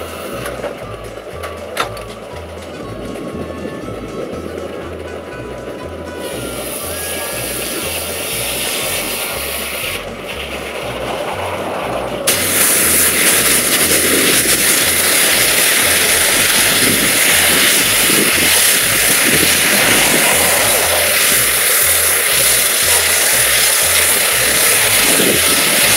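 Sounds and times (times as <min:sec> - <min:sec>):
steam hissing loudly: 0:00.0 - 0:00.6, 0:06.2 - 0:25.9.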